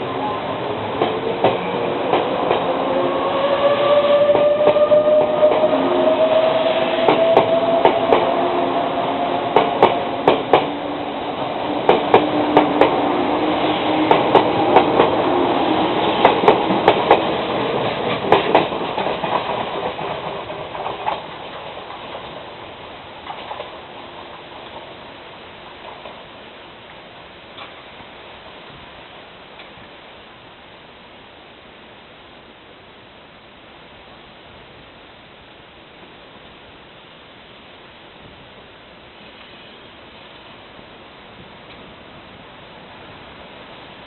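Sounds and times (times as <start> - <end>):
train wheels clattering over joints: 11.8 - 13.1, 14.0 - 15.2, 16.0 - 22.4.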